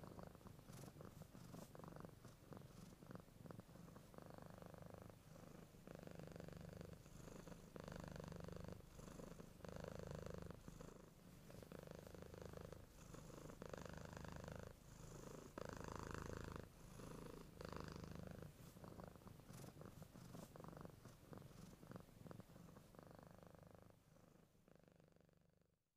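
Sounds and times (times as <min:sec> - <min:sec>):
cat purring: 0:00.0 - 0:25.9.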